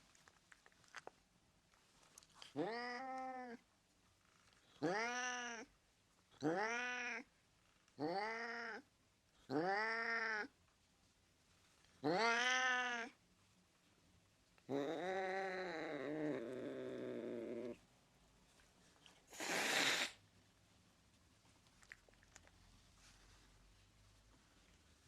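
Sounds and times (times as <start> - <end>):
cat meowing: 2.6 - 3.6, 4.8 - 5.7, 6.4 - 7.3, 8.0 - 8.8, 9.5 - 10.5, 12.0 - 13.2.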